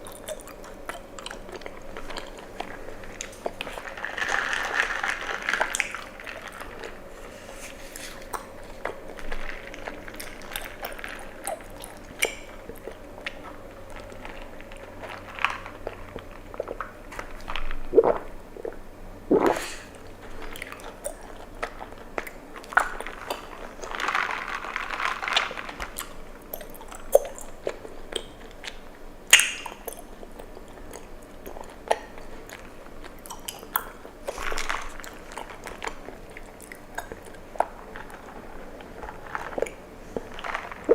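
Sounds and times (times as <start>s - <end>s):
chewing with wet clicks: 0.0s - 7.1s, 8.1s - 18.8s, 19.4s - 40.9s
gulping: 19.3s - 20.0s.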